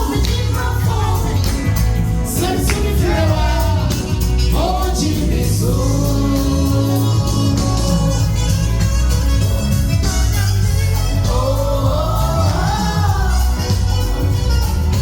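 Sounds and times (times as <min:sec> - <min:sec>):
gospel singing with band: 0:00.0 - 0:15.0
heavy bass line: 0:00.0 - 0:15.0.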